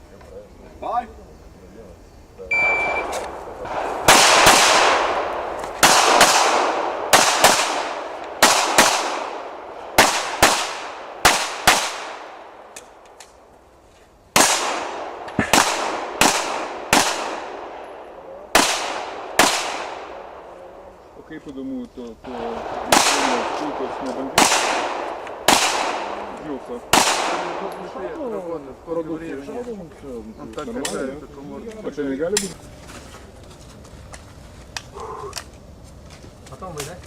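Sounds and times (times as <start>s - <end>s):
shot timer beep: 2.5s - 3.1s
pistol shots with echo: 2.8s - 13.2s, 14.4s - 20.6s, 22.2s - 28.2s.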